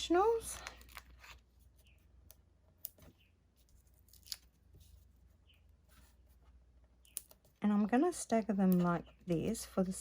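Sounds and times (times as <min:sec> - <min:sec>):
hands handling paper rustling: 0:00.0 - 0:02.2.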